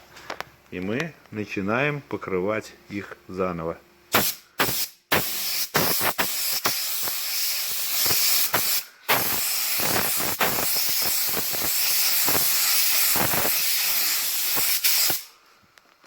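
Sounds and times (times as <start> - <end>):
lacquer spraying hiss: 4.1 - 15.4.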